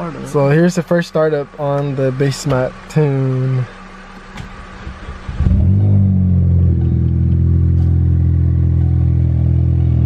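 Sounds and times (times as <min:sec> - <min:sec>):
car engine cranking and idling: 0:00.0 - 0:10.0.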